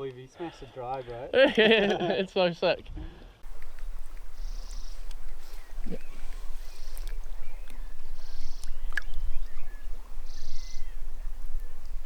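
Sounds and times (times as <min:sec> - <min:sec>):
faint chirps: 0:03.5 - 0:12.0
high buzzing calls: 0:03.5 - 0:12.0.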